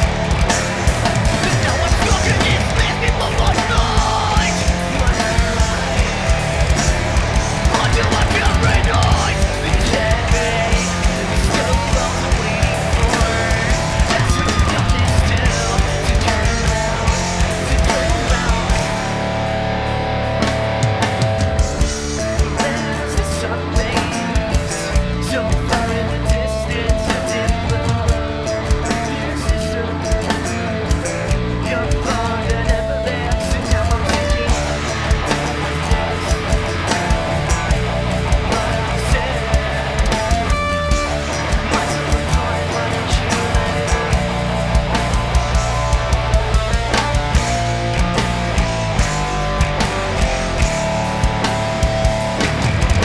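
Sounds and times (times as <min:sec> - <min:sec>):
live rock band playing: 0:00.0 - 0:53.0.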